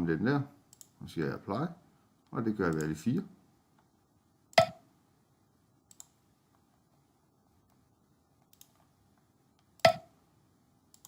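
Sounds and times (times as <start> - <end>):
computer mouse clicks: 0.7 - 1.0, 5.9 - 6.2, 8.4 - 8.9.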